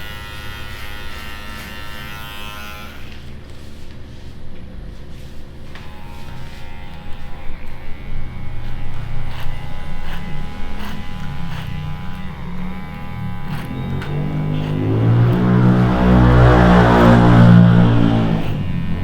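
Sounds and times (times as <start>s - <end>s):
electric hair clippers buzzing: 0.0s - 3.4s, 5.7s - 19.0s.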